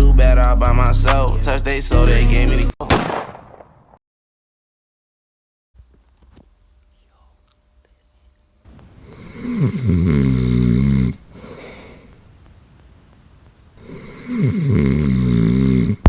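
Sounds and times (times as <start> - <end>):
person snoring loudly: 8.7 - 12.2, 13.8 - 16.0.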